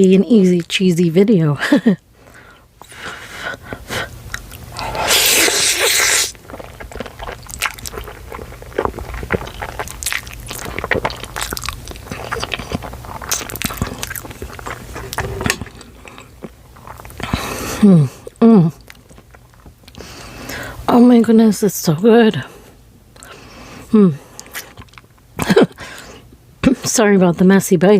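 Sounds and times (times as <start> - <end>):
chewing noodles: 2.5 - 20.7, 24.2 - 25.1
slurping noodles: 4.7 - 9.8.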